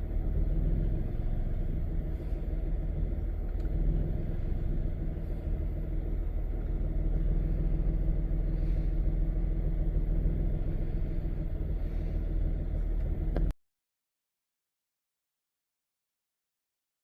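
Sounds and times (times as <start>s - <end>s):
car engine idling: 0.0s - 13.6s.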